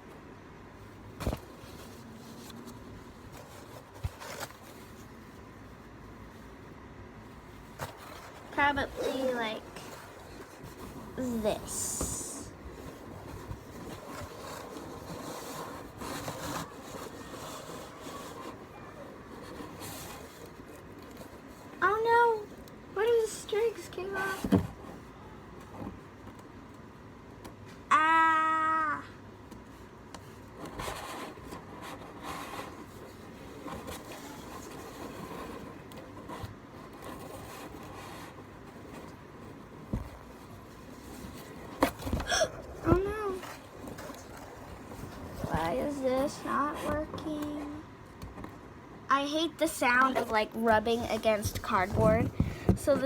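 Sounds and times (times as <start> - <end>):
scraping against cardboard box: 7.6 - 22.4, 30.4 - 47.4, 51.0 - 53.0
cloth scraping on cardboard box: 7.8 - 18.7, 51.2 - 53.0.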